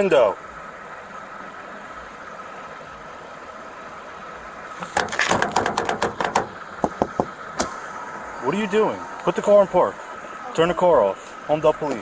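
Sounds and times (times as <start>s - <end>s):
car engine idling: 0.0s - 12.0s
knocks on car window glass: 4.8s - 7.7s.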